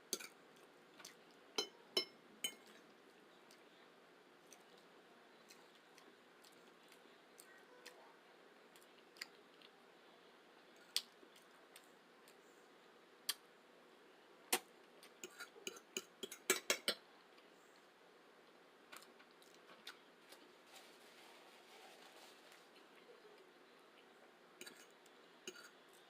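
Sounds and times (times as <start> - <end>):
utensils tapping against a dish: 1.6 - 2.6.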